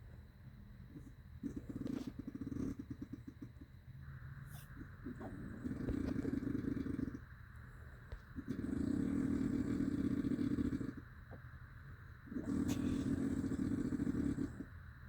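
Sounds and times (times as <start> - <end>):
quiet breath: 0.0 - 15.0
person snoring: 5.0 - 7.2, 8.4 - 11.0, 12.3 - 14.7.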